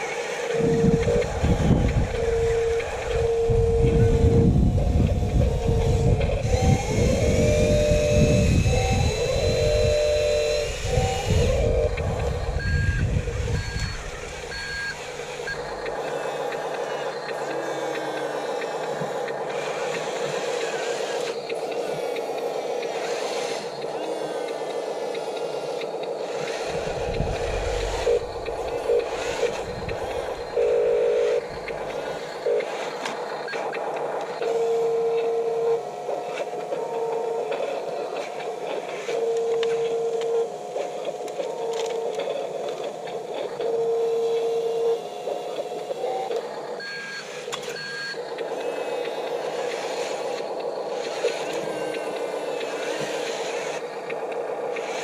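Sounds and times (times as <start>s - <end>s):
small electric motors whining: 0.0s - 55.0s
long electronic beeps: 0.5s - 18.6s.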